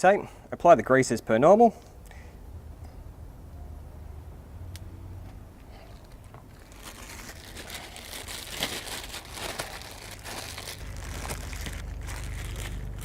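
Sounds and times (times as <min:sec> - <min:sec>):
low steady hum: 0:01.8 - 0:13.0
crinkling rustling handling noise: 0:05.6 - 0:13.0.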